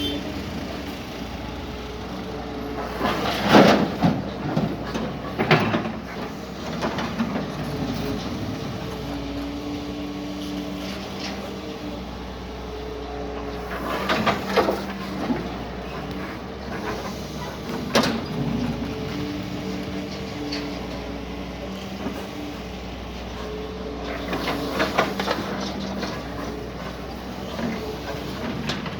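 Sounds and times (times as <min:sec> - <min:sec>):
excavator diesel engine running: 0:00.0 - 0:28.9.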